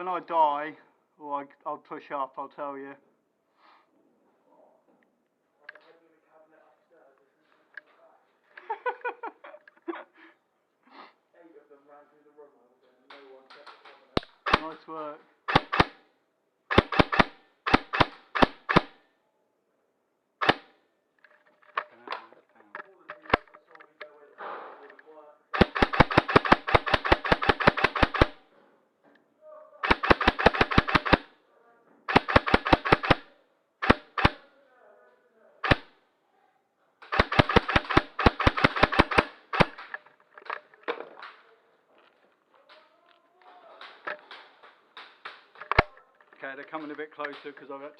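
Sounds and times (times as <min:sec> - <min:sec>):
airsoft gun shots: 0:14.2 - 0:14.8, 0:15.5 - 0:16.0, 0:16.7 - 0:19.0, 0:20.4 - 0:20.8, 0:25.6 - 0:28.4, 0:29.8 - 0:31.3, 0:32.1 - 0:34.4, 0:35.6 - 0:35.9, 0:37.1 - 0:40.0.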